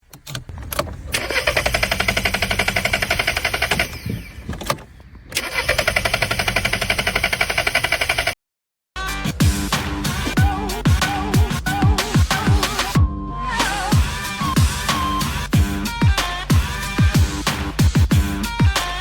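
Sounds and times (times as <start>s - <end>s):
car engine cranking on starter: 0.0s - 8.4s.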